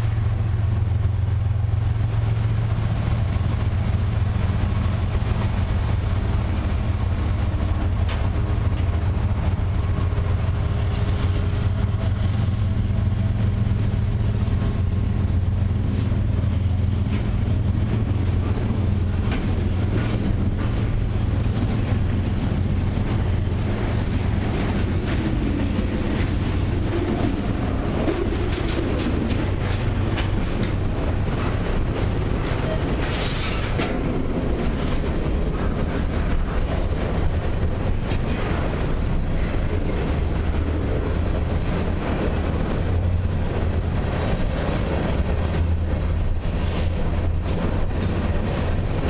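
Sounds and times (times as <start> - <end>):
freight train rumbling past: 0.0 - 49.0
wheel clicks over rail joints: 7.6 - 10.4, 14.5 - 49.0.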